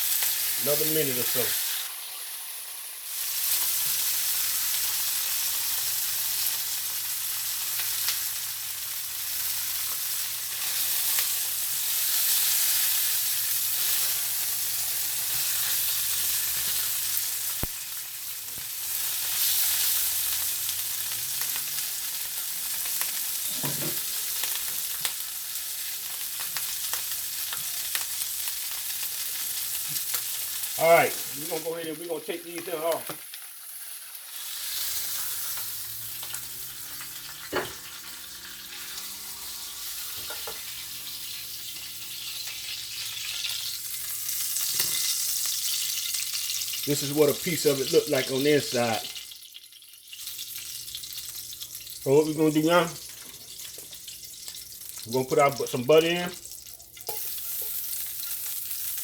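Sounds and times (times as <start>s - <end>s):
steaks sizzling in a hot pan: 0.0s - 59.0s.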